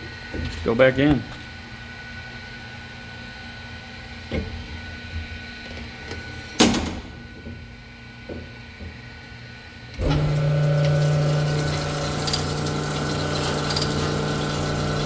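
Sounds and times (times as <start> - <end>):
honing machine running: 10.0 - 15.0.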